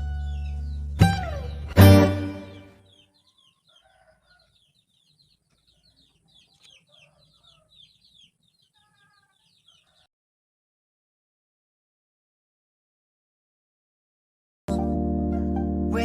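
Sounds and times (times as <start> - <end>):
faint birds chirping: 0.0 - 10.1
chicken clucking: 2.8 - 10.1.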